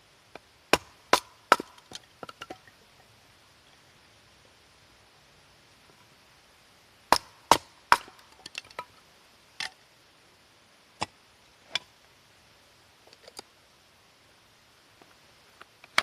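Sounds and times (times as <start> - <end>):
blade chopping wood: 0.7 - 2.6, 7.1 - 8.9.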